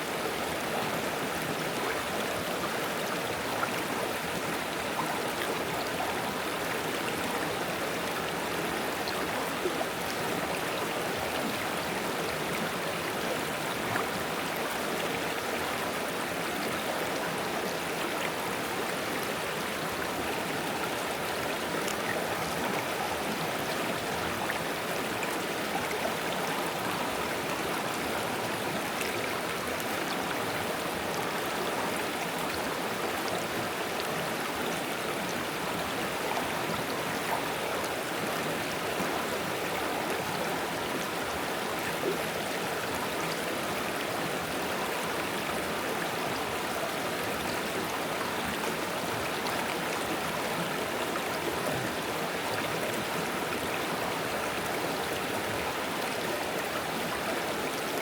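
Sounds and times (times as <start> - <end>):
stream babbling over stones: 0.0 - 58.0.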